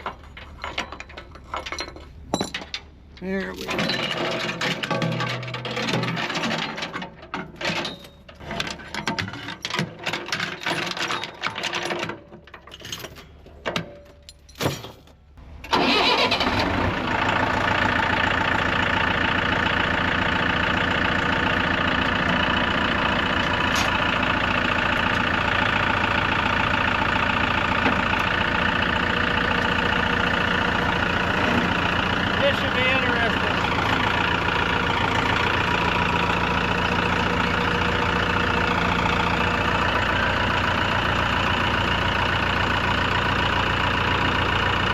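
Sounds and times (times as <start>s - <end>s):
clanks and knocks: 0.0s - 15.2s
engine running: 15.3s - 44.9s.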